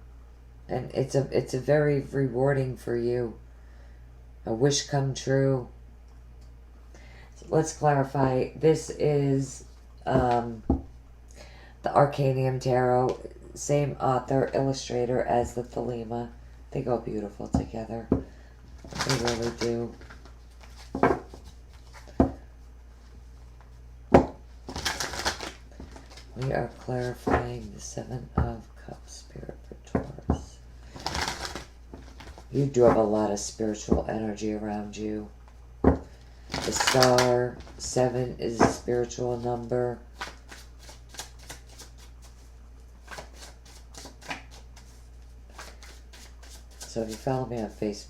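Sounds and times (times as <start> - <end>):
cards shuffling clicks: 18.8 - 22.3, 24.6 - 27.5, 30.9 - 32.5, 36.2 - 47.7.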